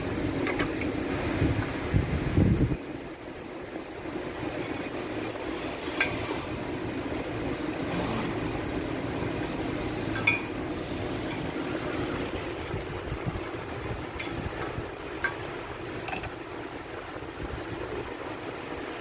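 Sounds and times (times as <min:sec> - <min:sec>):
machine hum: 0:00.0 - 0:19.0
metallic tool clinks: 0:16.1 - 0:16.3.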